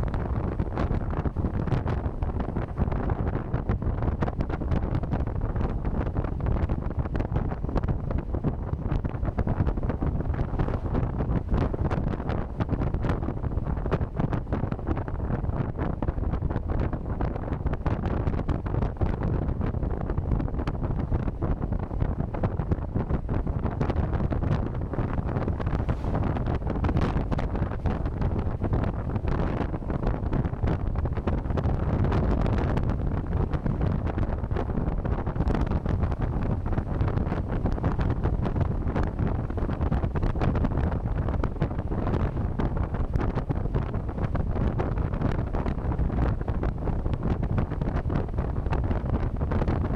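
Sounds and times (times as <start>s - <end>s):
wind buffeting microphone: 0.0s - 49.9s.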